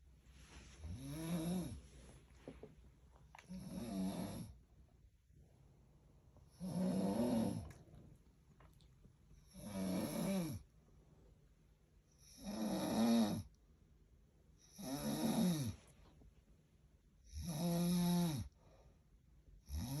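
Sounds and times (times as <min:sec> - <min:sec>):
loud snoring: 0:00.9 - 0:01.8, 0:03.5 - 0:04.6, 0:06.5 - 0:07.8, 0:09.5 - 0:10.6, 0:12.2 - 0:13.5, 0:14.7 - 0:15.8, 0:17.3 - 0:18.5, 0:19.7 - 0:20.0.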